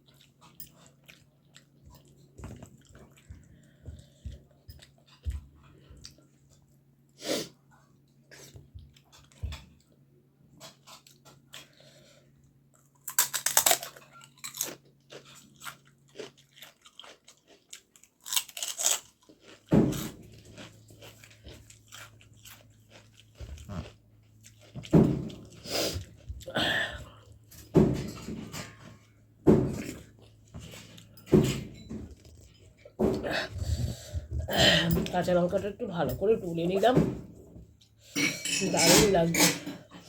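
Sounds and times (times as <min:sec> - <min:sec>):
chewing and mouth noises: 0:00.0 - 0:06.7, 0:10.6 - 0:27.4
crisp crunching bites: 0:13.0 - 0:19.7.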